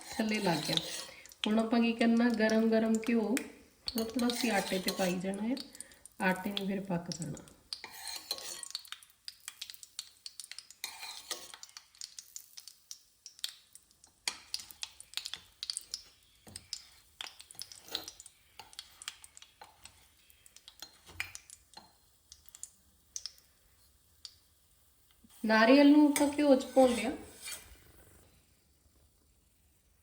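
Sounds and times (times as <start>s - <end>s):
ghee crackling in a pan: 0.0s - 30.0s
spoon tapping a pan: 0.6s - 9.8s.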